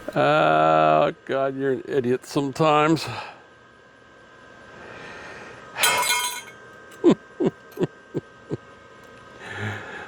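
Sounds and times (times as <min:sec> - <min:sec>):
sheet metal clattering: 0:05.8 - 0:06.5.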